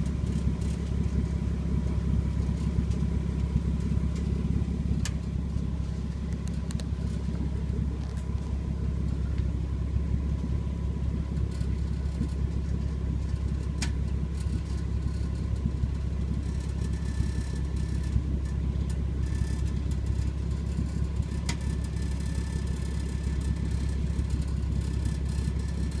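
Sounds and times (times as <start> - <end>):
car engine idling: 0.0 - 26.0
exhaust rattling: 0.0 - 26.0.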